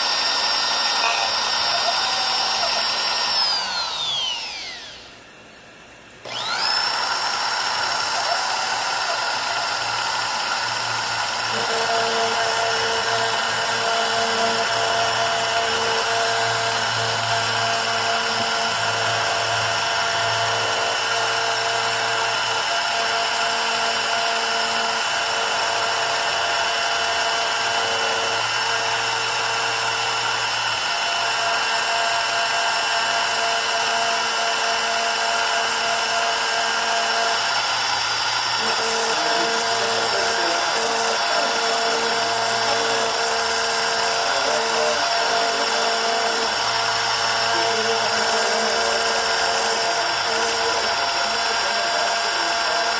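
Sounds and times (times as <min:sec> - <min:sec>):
engraving spindle high whine: 0:00.0 - 0:52.9.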